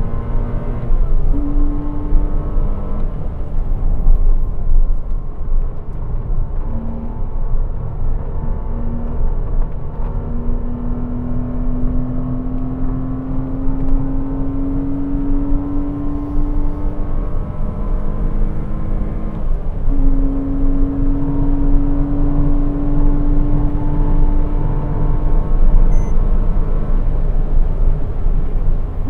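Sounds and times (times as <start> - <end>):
car engine revving under full throttle: 0.0 - 4.4, 6.0 - 29.0.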